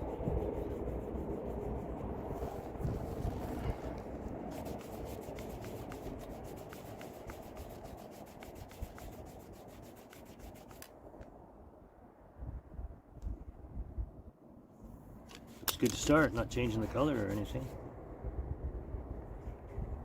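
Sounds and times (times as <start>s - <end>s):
hand rubbing wooden handle: 0.0s - 10.9s, 15.3s - 17.8s.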